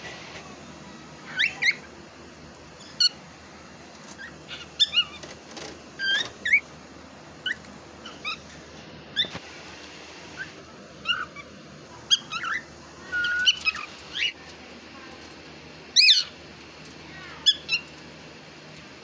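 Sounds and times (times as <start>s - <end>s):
cockatiel chirping: 1.3s - 1.9s, 2.8s - 3.2s, 4.2s - 5.3s, 6.0s - 6.6s, 7.4s - 8.4s, 10.4s - 11.5s, 12.1s - 14.4s, 16.0s - 16.4s, 17.4s - 18.0s.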